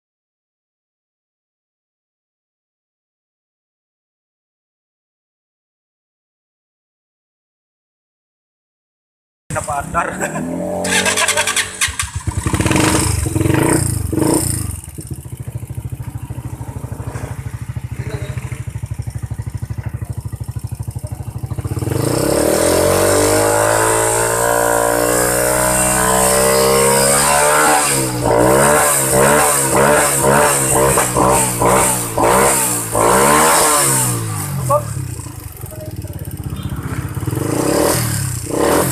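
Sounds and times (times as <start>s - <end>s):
motorcycle engine revving and idling: 9.5s - 38.9s.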